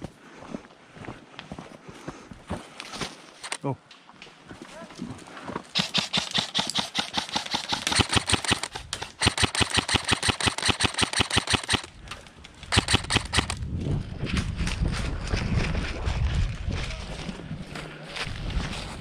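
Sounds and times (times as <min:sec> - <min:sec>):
airsoft rifle rapid shots: 0:05.8 - 0:11.9, 0:12.7 - 0:13.6.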